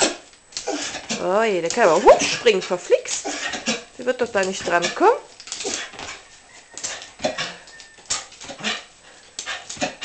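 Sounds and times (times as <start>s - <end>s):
dog whining: 4.9s - 9.0s.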